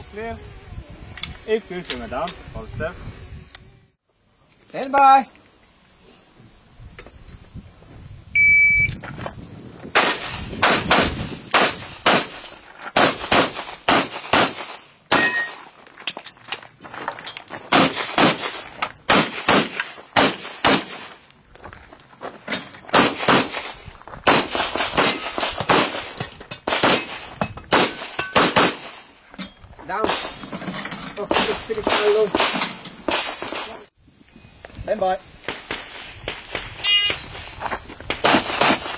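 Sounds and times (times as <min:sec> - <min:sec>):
shot timer beep: 0:08.4 - 0:09.0
handgun firing rapid shots: 0:13.0 - 0:15.3, 0:17.7 - 0:21.1, 0:22.9 - 0:23.7, 0:26.7 - 0:29.0.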